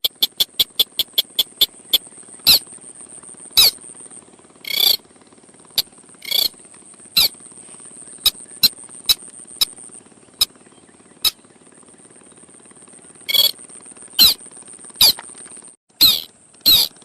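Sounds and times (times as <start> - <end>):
bird call sharp clicks: 0.0 - 2.6, 3.6 - 3.8, 4.7 - 5.0, 5.8 - 6.5, 13.3 - 13.6, 14.2 - 14.4, 15.0 - 17.0
rasping bird notes: 0.0 - 2.7, 3.6 - 3.8, 4.6 - 5.0, 5.8 - 6.6, 7.2 - 7.4, 13.3 - 13.6, 14.2 - 15.3, 16.0 - 17.0
faint high whine: 5.8 - 17.0.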